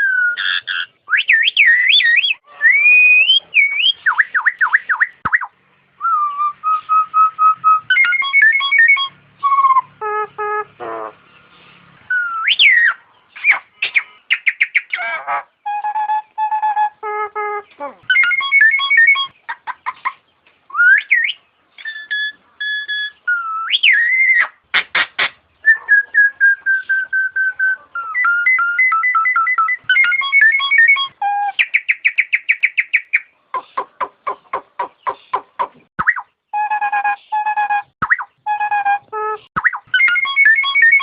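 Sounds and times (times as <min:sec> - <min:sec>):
myna whistling calls: 0:00.0 - 0:11.5, 0:12.1 - 0:41.0
sharp bird clicks: 0:31.6 - 0:36.3.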